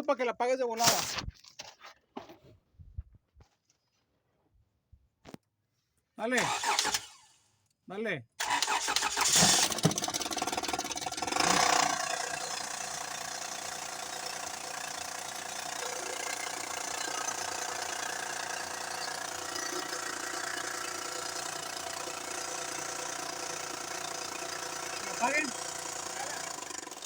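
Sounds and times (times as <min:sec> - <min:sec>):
car engine idling: 0:08.4 - 0:27.0.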